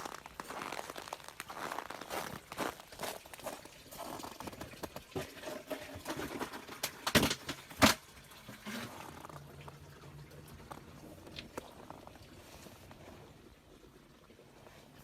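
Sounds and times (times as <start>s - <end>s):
footsteps crunching in snow: 0.0s - 4.7s.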